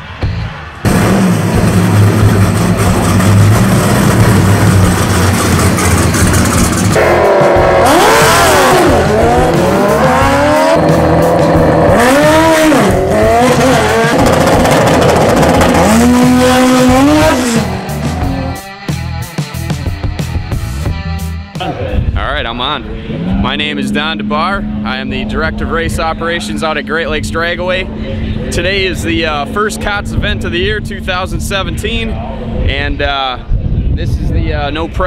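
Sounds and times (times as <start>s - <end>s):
drag car engine revving: 0.8s - 18.7s, 22.7s - 32.6s.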